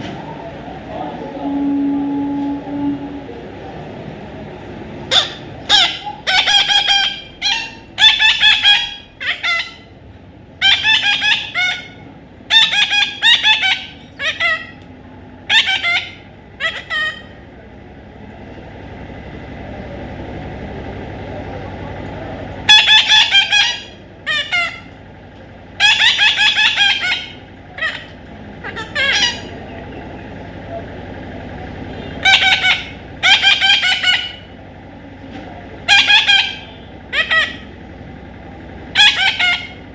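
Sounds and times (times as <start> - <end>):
parrot harsh calls: 5.1 - 9.9, 10.6 - 14.8, 15.4 - 17.4, 22.6 - 25.0, 25.8 - 29.7, 32.2 - 34.6, 35.8 - 37.8, 38.9 - 39.9.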